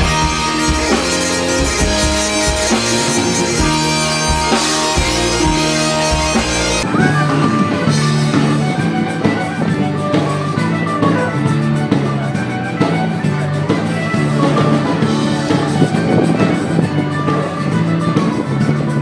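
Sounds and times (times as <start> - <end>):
repeating bass line: 0.0 - 12.6
drums: 0.0 - 19.0.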